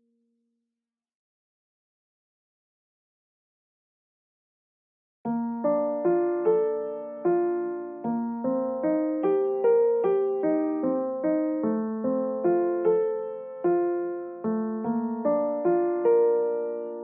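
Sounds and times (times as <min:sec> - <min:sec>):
gentle solo piano melody: 0:05.3 - 0:17.0.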